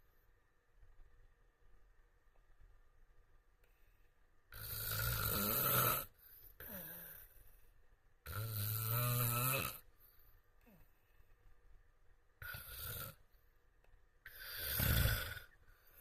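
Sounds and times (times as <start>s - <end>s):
soft breath: 3.6s - 4.4s, 6.1s - 8.2s, 9.9s - 11.8s, 14.2s - 16.0s
man snoring: 4.5s - 7.1s, 8.2s - 9.9s, 12.4s - 13.2s, 14.3s - 15.6s.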